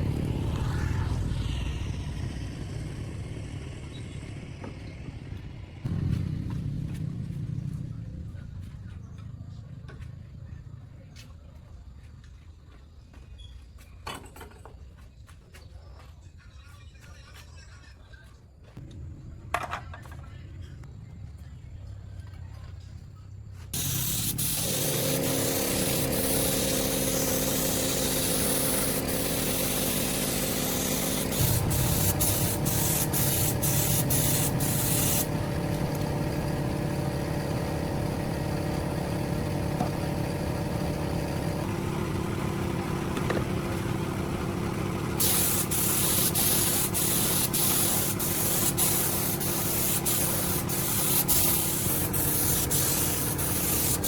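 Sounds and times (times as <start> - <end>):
hissing scraping noise: 23.8 - 40.9
power tool motor hum: 23.8 - 54.0.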